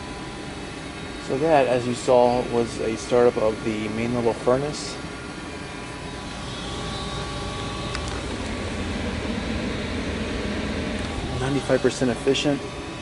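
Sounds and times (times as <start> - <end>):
low hum: 5.2 - 13.0
gas furnace burner rushing: 6.1 - 13.0.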